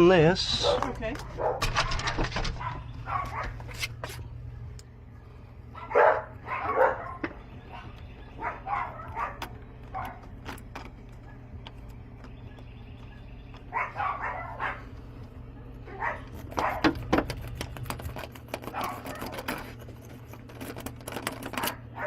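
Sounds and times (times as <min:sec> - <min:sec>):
dog barking: 0:00.5 - 0:03.7, 0:05.7 - 0:10.3, 0:13.7 - 0:14.9, 0:15.8 - 0:17.0, 0:18.7 - 0:19.4, 0:21.6 - 0:22.0.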